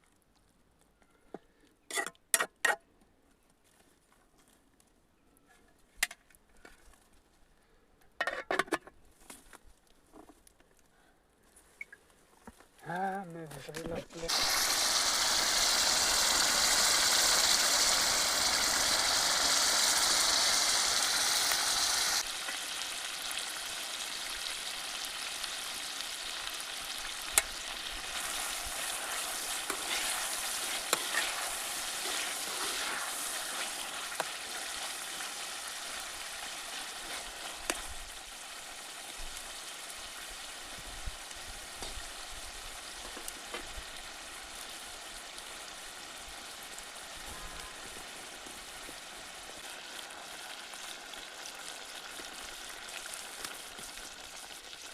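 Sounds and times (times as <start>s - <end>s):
chicken sizzling in hot oil: 14.2s - 54.9s.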